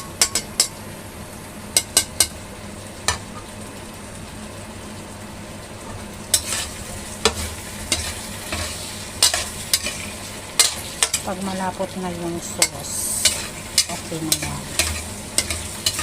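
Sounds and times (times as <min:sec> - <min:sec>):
food sizzling in a pan: 0:00.0 - 0:16.0
utensil scraping a pan: 0:06.4 - 0:11.3, 0:12.6 - 0:16.0.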